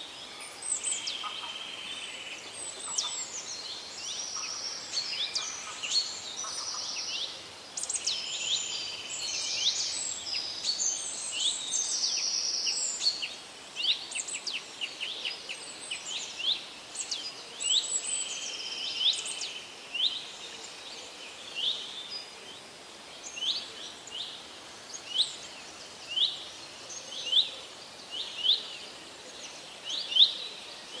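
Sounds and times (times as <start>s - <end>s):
birds singing and trilling: 0.2s - 22.3s.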